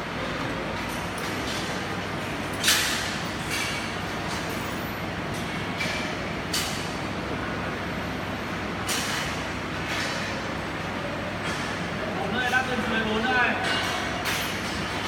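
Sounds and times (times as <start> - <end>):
workshop noise: 0.0 - 15.0.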